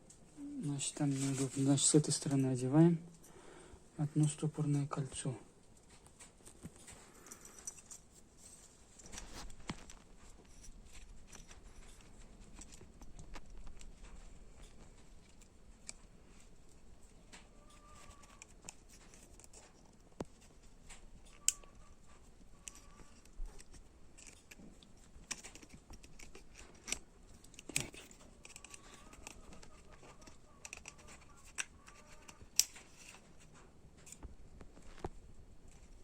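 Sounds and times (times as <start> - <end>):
metallic clicks and scrapes of tools: 5.8 - 35.1.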